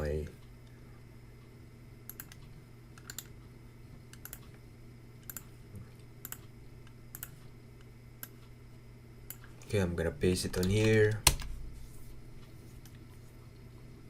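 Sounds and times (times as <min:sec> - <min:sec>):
steady low hum: 0:00.0 - 0:14.0
computer keyboard clicks: 0:02.1 - 0:03.3, 0:04.2 - 0:04.6, 0:05.2 - 0:05.5, 0:06.2 - 0:06.4.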